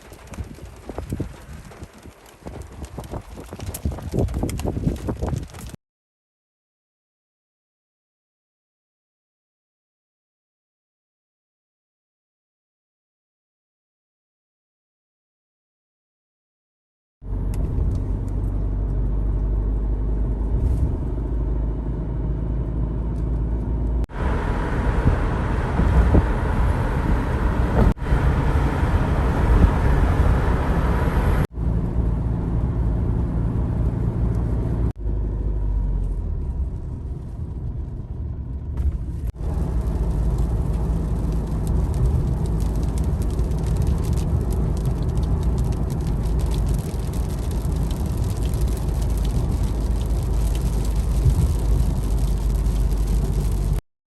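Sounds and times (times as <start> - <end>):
car engine and tyres rumbling: 0.0 - 5.8, 17.2 - 53.8.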